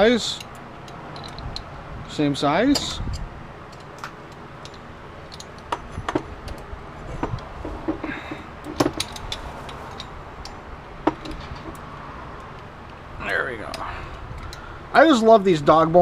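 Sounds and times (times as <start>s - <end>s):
wrench clinking on metal nut: 0.3s - 1.7s, 2.7s - 12.7s.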